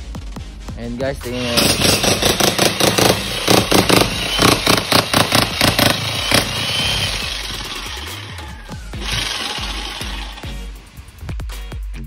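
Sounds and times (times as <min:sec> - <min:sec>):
electric jackhammer hammering: 0:01.3 - 0:10.7.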